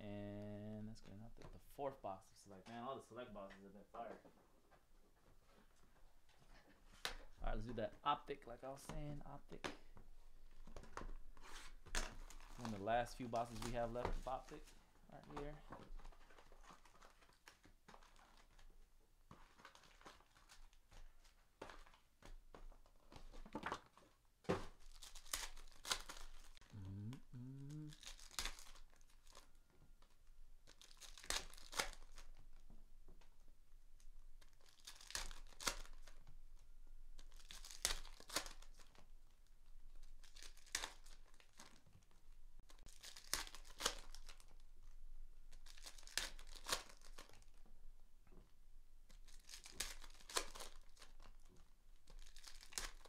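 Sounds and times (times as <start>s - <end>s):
wrappers crinkling: 11.4s - 18.7s, 19.3s - 22.1s, 23.2s - 32.7s, 34.0s - 36.3s, 37.1s - 47.6s, 49.1s - 53.0s
card packs being torn open: 11.5s - 14.5s, 19.4s - 20.8s, 24.6s - 32.6s, 34.4s - 36.3s, 37.2s - 39.0s, 40.0s - 42.1s, 42.7s - 44.6s, 45.5s - 47.6s, 49.1s - 53.0s.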